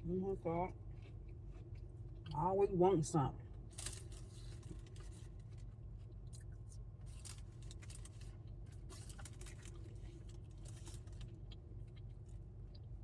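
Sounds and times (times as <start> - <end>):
food packaging rustling: 3.7 - 5.7, 7.0 - 11.4.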